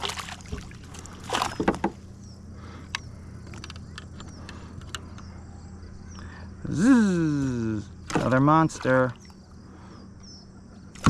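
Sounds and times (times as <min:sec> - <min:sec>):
fish splashing in water: 0:00.0 - 0:01.8
light clicks and knocks: 0:02.9 - 0:05.3.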